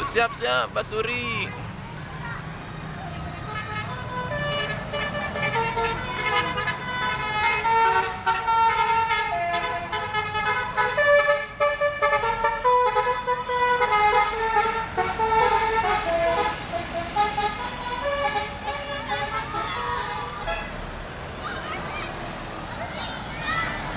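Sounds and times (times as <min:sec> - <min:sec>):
multi-tone bus horn tune: 0:03.2 - 0:20.9.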